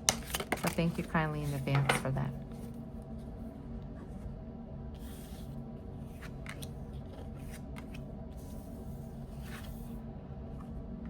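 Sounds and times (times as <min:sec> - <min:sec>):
cards rustling and flicking: 0:00.0 - 0:01.7, 0:05.0 - 0:08.6
low background hum: 0:00.0 - 0:11.0.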